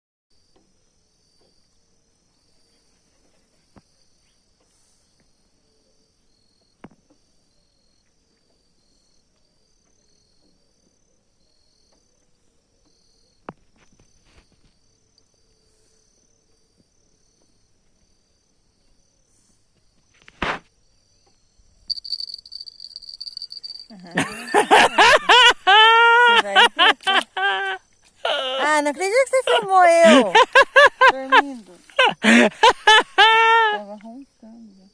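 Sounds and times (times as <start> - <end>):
crickets chirping: 0.3 - 34.9
person's voice: 26.0 - 26.9, 28.3 - 32.6.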